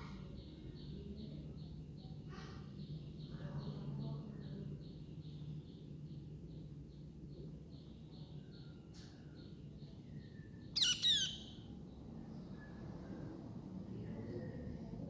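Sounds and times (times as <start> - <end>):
baby birds cheeping: 10.8 - 11.7.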